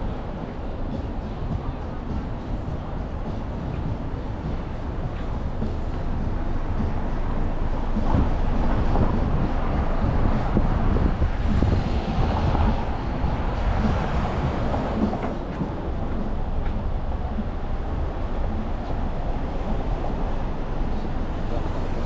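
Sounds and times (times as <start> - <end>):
low rumble of traffic: 0.0 - 22.0.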